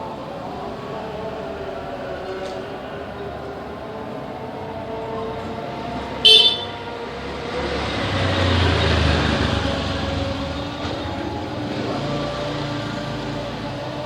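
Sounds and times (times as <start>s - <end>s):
motor vehicle passing by: 5.2s - 14.0s.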